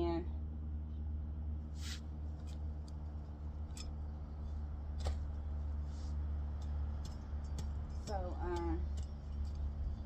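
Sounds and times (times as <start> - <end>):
steady low hum: 0.0 - 10.0
hands rustling through soil: 1.8 - 2.2, 5.2 - 7.0.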